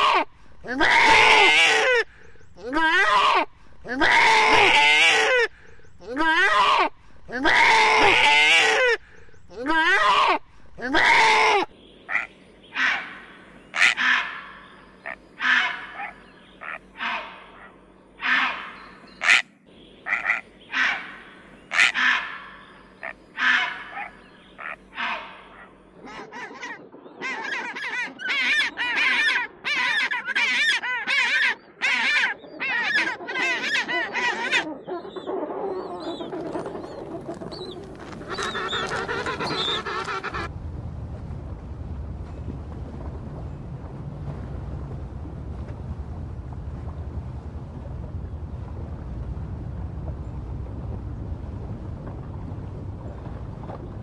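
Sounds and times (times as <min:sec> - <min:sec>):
geese honking: 0:11.0 - 0:26.3, 0:38.0 - 0:40.5.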